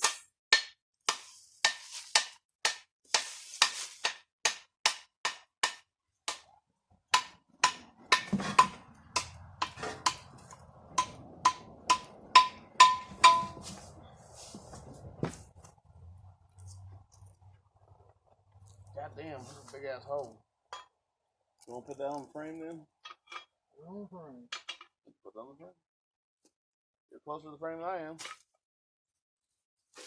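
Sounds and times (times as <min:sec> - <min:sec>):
sharp metallic knocks: 0:07.1 - 0:13.8.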